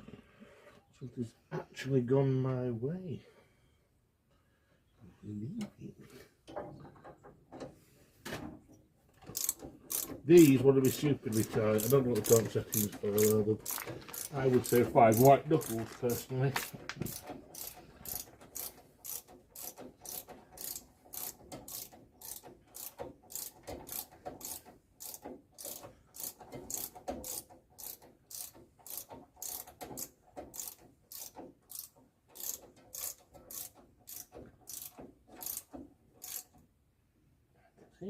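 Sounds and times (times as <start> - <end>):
ratchet wrench clicking: 9.3 - 10.2, 10.9 - 15.8, 17.1 - 36.6.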